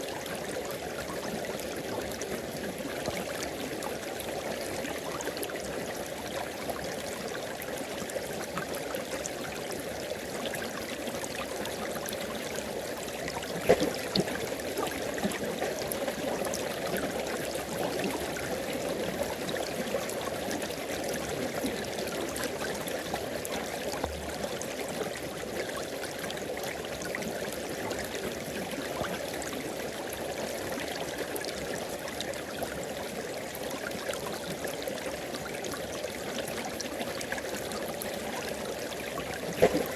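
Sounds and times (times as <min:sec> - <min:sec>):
river water rushing: 0:39.6 - 0:39.9.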